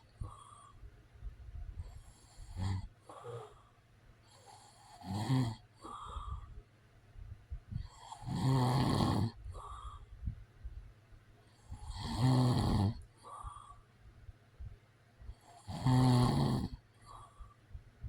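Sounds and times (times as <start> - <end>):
soft breaths: 0.0 - 15.7, 16.6 - 18.0
man snoring: 2.1 - 3.6, 4.4 - 6.3, 7.9 - 9.8, 11.7 - 13.6, 15.4 - 17.2.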